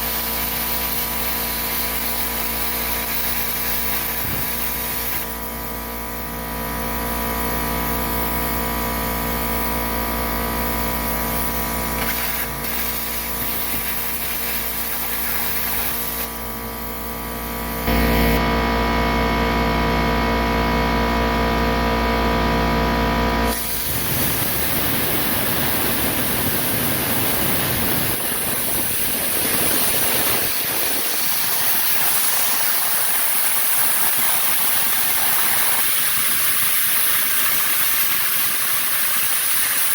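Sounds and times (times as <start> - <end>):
rushing hiss of air: 0.0 - 5.4, 23.5 - 36.7
plasma cutter buzzing: 0.0 - 18.4, 23.5 - 39.9.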